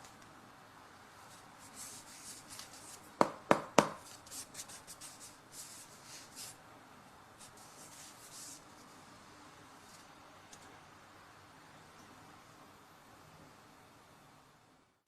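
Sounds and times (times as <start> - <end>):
hands rubbing an object: 1.2 - 3.1.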